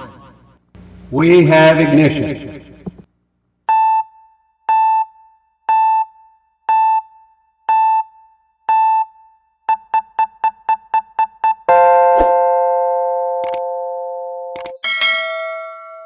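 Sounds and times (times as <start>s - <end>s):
electronic timer beeps: 3.7s - 12.5s.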